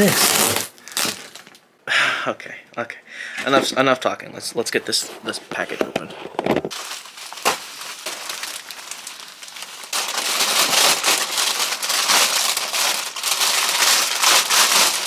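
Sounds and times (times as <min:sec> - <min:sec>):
cardboard box tearing open: 0:00.0 - 0:01.5
packing material crinkling: 0:00.0 - 0:01.6, 0:06.7 - 0:15.0.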